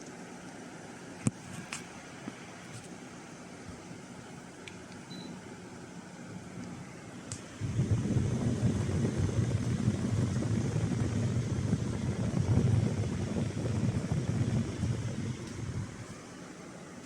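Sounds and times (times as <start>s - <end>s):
air conditioner fan hiss: 0.0s - 17.0s
air buffeting microphone: 6.4s - 17.0s.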